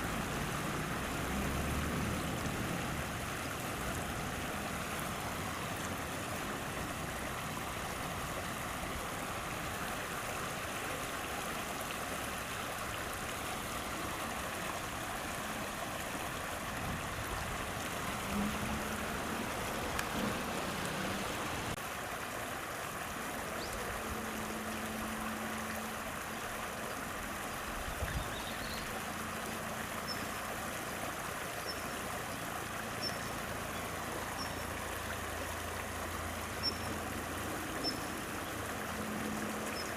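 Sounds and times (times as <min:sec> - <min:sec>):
river water flowing: 0:00.0 - 0:39.9.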